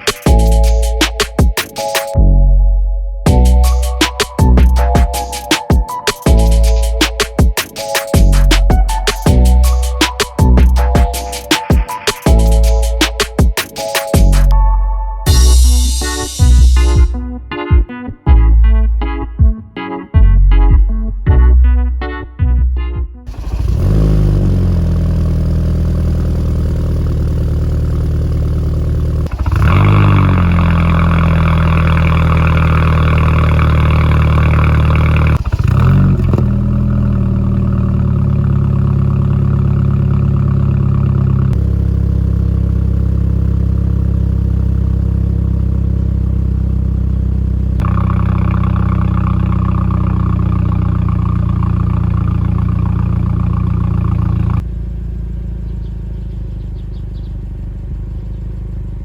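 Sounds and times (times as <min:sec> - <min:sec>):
car engine running: 0:00.0 - 0:01.8, 0:03.3 - 0:05.6, 0:08.2 - 0:11.5, 0:12.3 - 0:14.5, 0:23.3 - 0:59.0.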